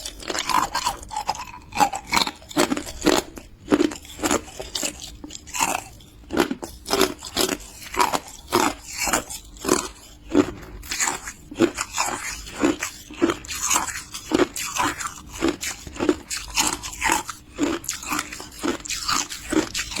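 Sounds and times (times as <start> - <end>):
ice being chewed: 0.0 - 20.0.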